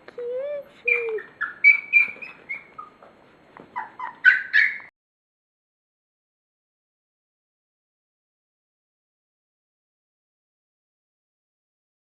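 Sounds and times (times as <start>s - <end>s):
dog whining and yipping: 0.4s - 3.1s, 3.7s - 4.9s.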